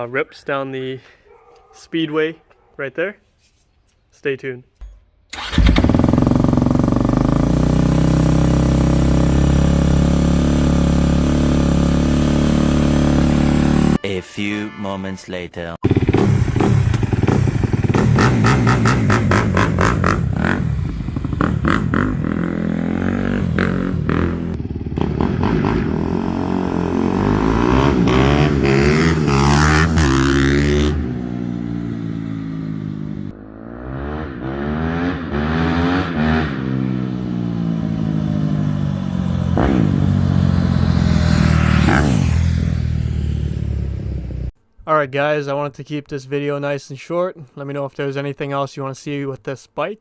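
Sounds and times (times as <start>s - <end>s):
dirt bike engine revving: 5.3s - 14.0s, 15.8s - 44.5s.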